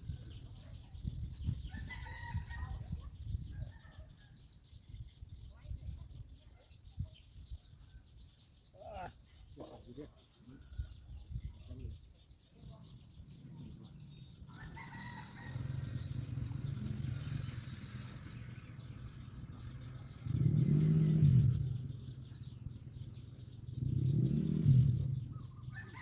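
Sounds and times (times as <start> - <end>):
small birds chirping: 0.0 - 26.0
low engine drone: 13.4 - 26.0.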